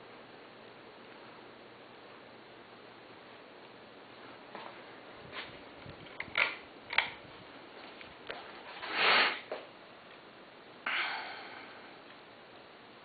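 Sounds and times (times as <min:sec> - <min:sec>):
ceiling fan running: 0:00.0 - 0:13.0
person sniffing loudly: 0:08.8 - 0:09.5.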